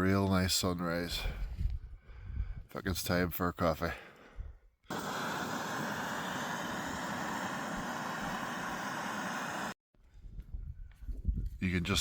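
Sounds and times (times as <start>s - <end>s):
gas stove burner roaring: 4.9s - 9.8s.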